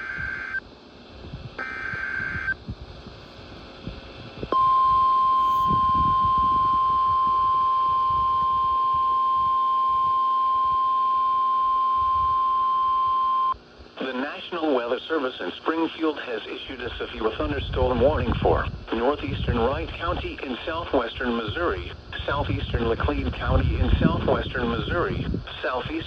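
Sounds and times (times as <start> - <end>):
steady warning alarm tone: 1.6 - 2.6, 4.5 - 13.6
faint radio static: 13.9 - 26.0.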